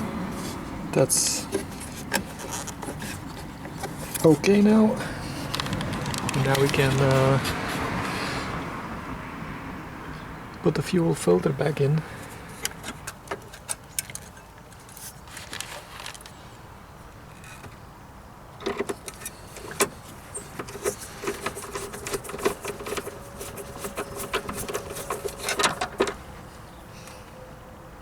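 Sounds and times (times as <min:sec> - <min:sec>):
plastic and metal parts clicking: 0:05.5 - 0:07.0, 0:18.6 - 0:26.2.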